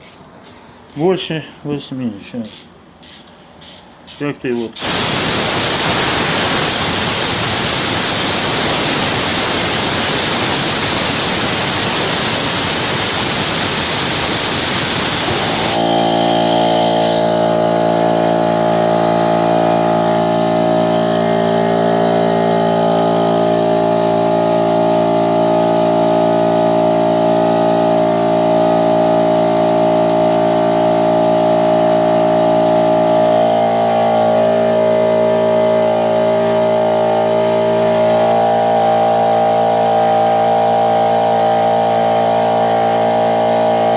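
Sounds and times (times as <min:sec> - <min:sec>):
compressed air hissing: 0:00.0 - 0:01.1, 0:02.4 - 0:18.1
air compressor humming: 0:00.0 - 0:43.9.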